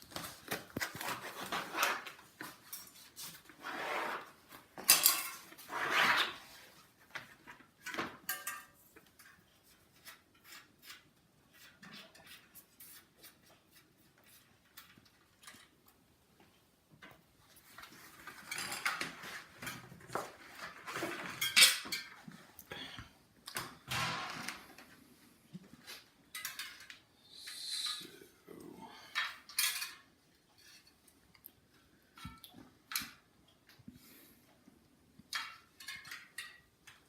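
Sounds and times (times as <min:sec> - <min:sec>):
metal tools clinking and rattling: 0:04.8 - 0:05.6, 0:08.2 - 0:09.4, 0:18.3 - 0:19.9, 0:21.1 - 0:22.2, 0:26.3 - 0:27.0, 0:29.1 - 0:30.1, 0:35.4 - 0:36.7.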